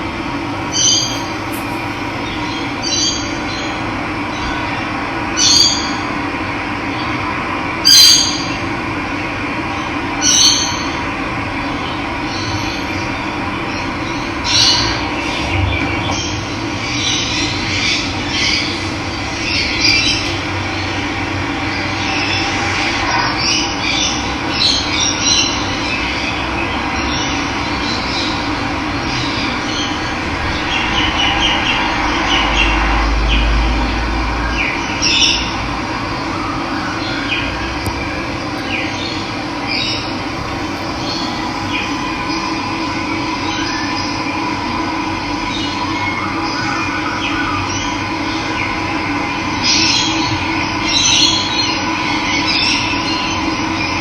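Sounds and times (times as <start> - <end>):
birds calling and squawking: 0.6 - 3.8, 38.6 - 44.2.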